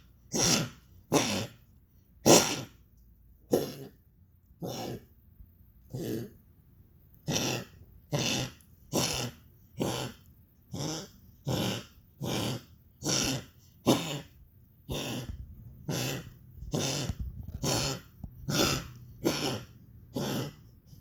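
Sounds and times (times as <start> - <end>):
harsh coughing: 2.2 - 2.8, 11.5 - 16.2.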